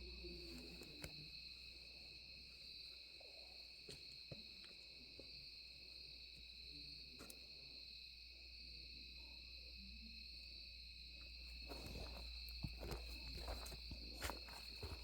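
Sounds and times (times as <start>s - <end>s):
crickets trilling: 0.0s - 15.0s
soft knocks and rustles: 11.6s - 15.0s.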